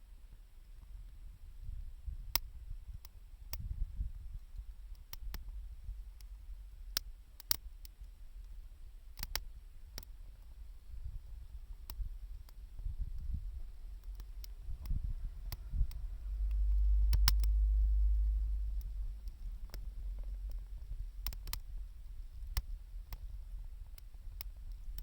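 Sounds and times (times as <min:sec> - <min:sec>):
low rumble: 0:13.0 - 0:23.8
wood fire crackling: 0:13.6 - 0:25.0.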